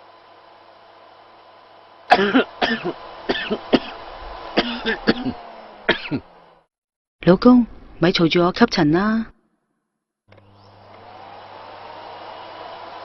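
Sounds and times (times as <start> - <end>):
man coughing harshly: 2.1 - 4.0, 4.6 - 6.3.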